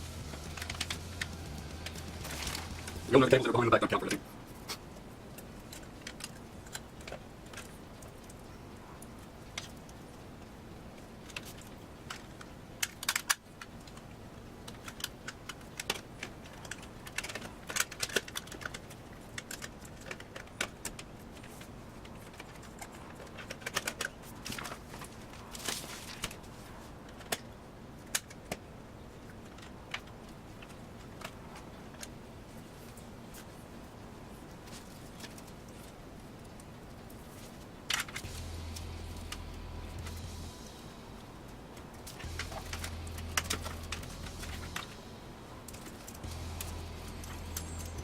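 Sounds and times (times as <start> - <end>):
faint hum: 0.0 - 12.5, 28.7 - 48.0
computer parts clicking: 0.1 - 4.2, 37.9 - 48.0.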